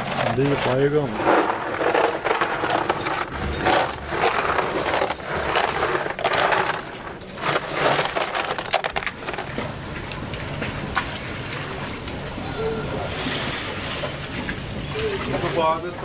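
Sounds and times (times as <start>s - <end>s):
small hard pieces clinking: 0.0s - 9.7s.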